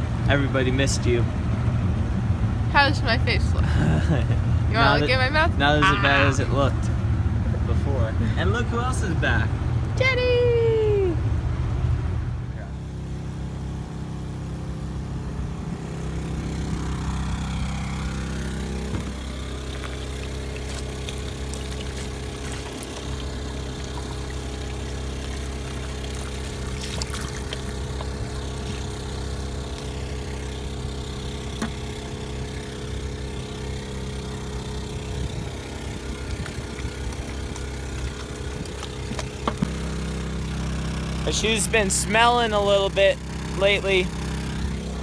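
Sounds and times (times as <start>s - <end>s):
engine idling: 0.0s - 45.0s.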